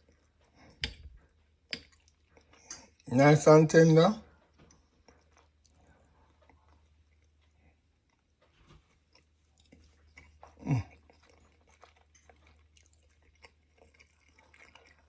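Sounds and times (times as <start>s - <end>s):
person chewing: 4.9s - 8.3s, 9.0s - 15.0s.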